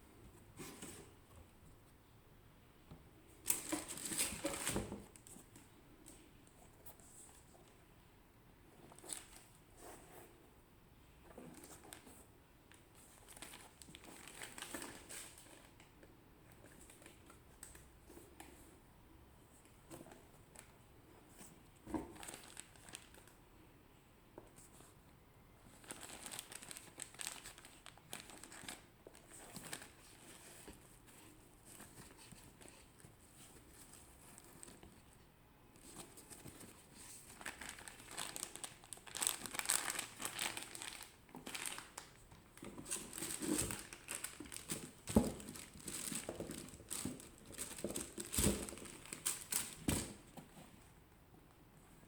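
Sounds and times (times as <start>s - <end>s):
paper packaging crinkling: 22.1s - 23.3s, 25.8s - 30.5s, 36.3s - 50.2s.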